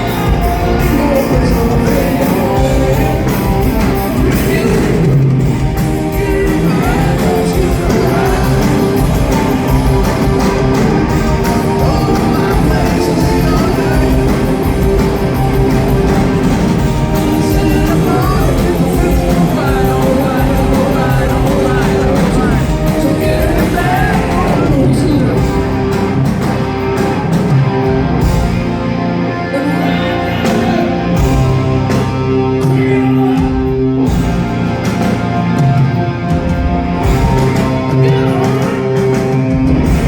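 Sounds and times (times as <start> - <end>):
person singing: 0.0 - 15.8, 17.0 - 25.7, 37.0 - 39.6
hard rock band playing: 0.0 - 40.0.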